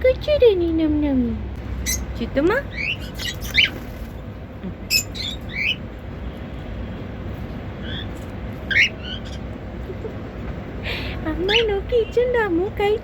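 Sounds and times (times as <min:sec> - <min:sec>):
cockatiels chirping: 0:01.8 - 0:02.1, 0:02.7 - 0:04.1, 0:04.9 - 0:05.8, 0:07.8 - 0:09.5.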